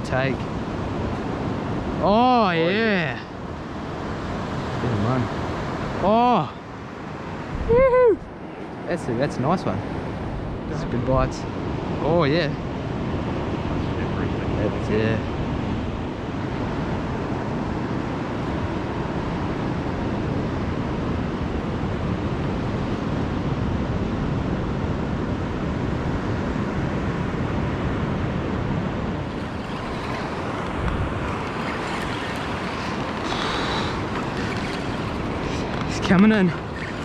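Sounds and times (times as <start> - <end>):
surf washing on shore: 0.0 - 7.7, 25.4 - 37.0
wind buffeting microphone: 6.7 - 37.0.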